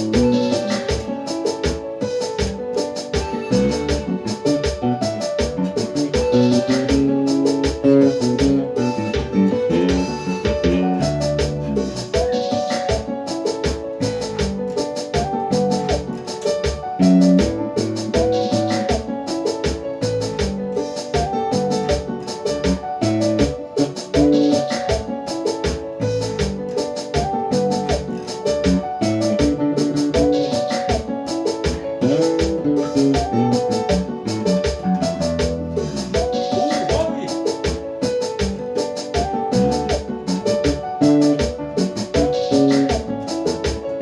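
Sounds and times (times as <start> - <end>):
keyboard chords: 0.0 - 44.0
steady drum beat: 0.0 - 44.0
booming electric bass guitar: 7.9 - 12.1, 27.2 - 30.3.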